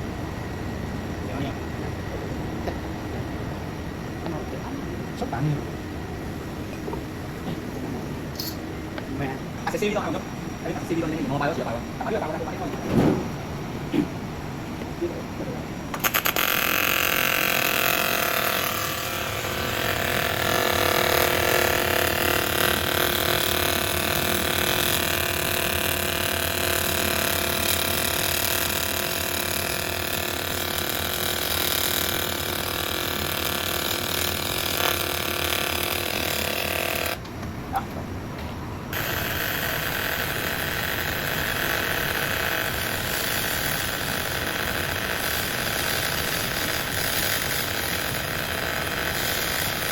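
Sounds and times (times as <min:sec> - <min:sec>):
welding arc buzzing hiss: 0:15.9 - 0:37.2, 0:38.9 - 0:49.9.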